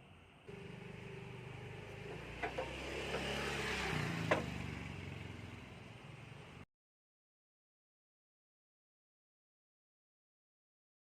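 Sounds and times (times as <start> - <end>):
motor vehicle passing by: 0.5 - 6.6.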